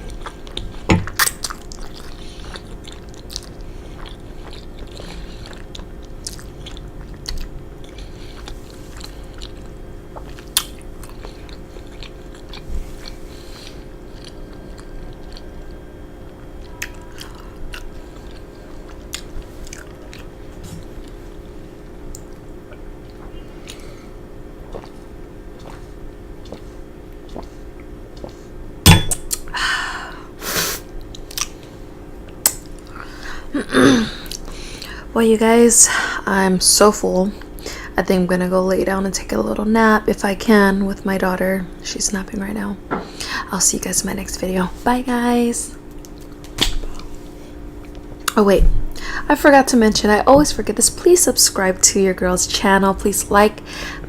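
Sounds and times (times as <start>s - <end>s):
chewing pasta: 0.0s - 28.6s, 30.9s - 33.0s, 45.7s - 48.4s
steady low hum: 0.0s - 54.0s.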